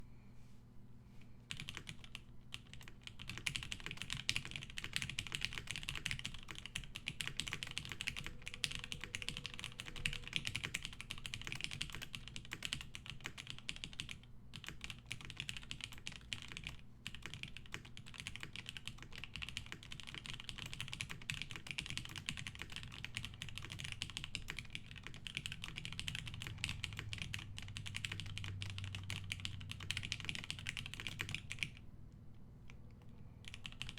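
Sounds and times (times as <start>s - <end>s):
typing on mechanical keyboard: 1.5s - 31.8s, 32.7s - 33.9s.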